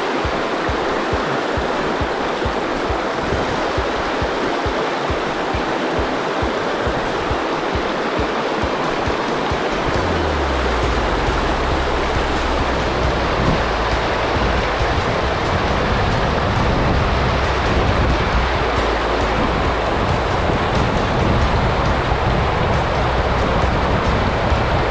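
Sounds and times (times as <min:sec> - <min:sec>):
rushing river water: 0:00.0 - 0:24.9
low steady hum: 0:09.2 - 0:24.9.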